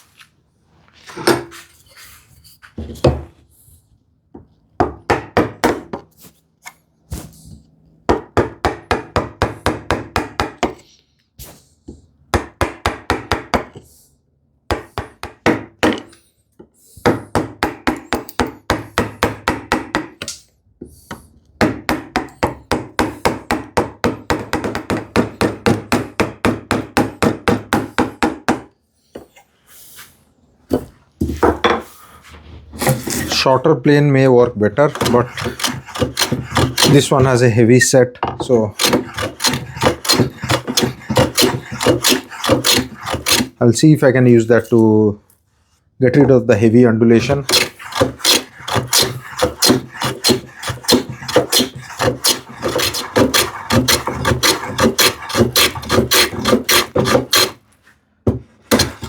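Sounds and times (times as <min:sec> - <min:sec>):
mallet tapping chisel: 0:34.9 - 0:37.4, 0:38.7 - 0:43.6, 0:47.3 - 0:57.6, 0:58.7 - 0:59.0.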